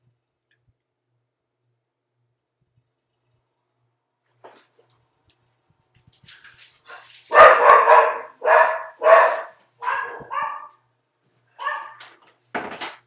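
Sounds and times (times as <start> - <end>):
dog barking: 7.3 - 10.8, 11.6 - 12.1.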